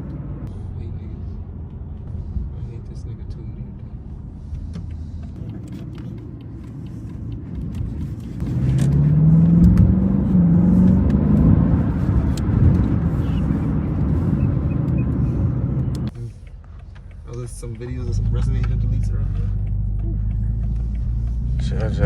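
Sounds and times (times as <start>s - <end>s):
car engine revving: 4.0s - 16.5s, 17.4s - 22.0s.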